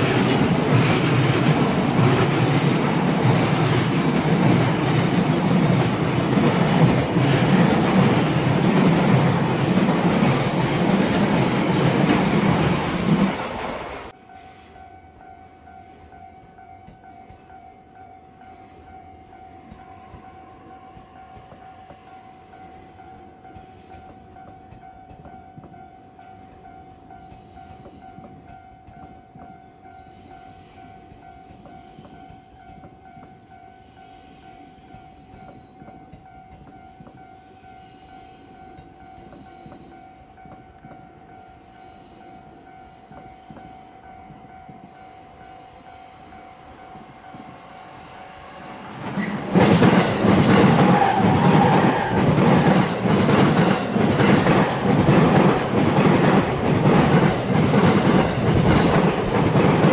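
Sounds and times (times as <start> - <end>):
wheels clacking over rail joints: 0.0 - 14.2, 48.9 - 59.9
level-crossing warning tone: 0.0 - 59.9
train passing loudly: 0.0 - 59.9.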